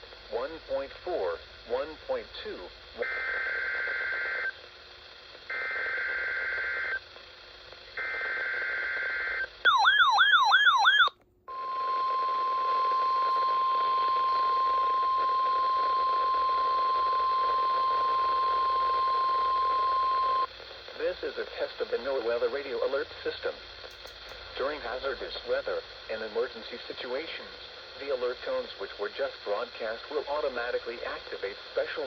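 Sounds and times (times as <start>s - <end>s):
steady high-pitched alarm tone: 9.7s - 20.5s.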